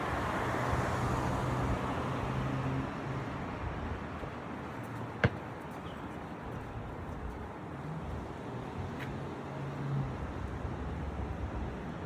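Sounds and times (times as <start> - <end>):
city traffic: 0.0 - 12.0.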